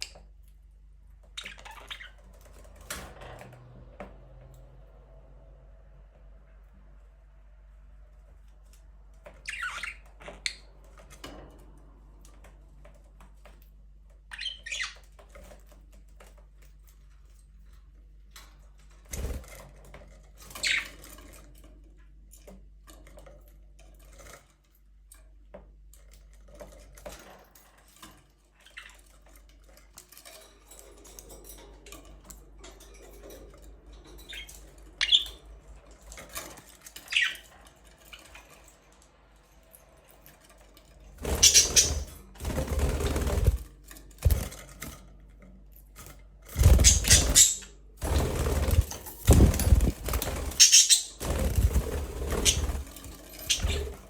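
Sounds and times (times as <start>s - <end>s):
budgerigars chirping: 34.3s - 35.4s, 41.3s - 42.1s, 46.6s - 47.6s, 49.4s - 51.2s, 53.5s - 53.9s.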